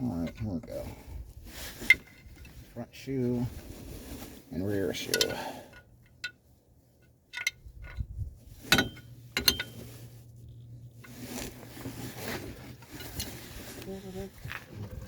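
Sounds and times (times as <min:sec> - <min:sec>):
soft rustling: 0:00.8 - 0:05.1, 0:09.6 - 0:15.0
metal brake parts clinking: 0:07.0 - 0:08.1, 0:08.7 - 0:09.9.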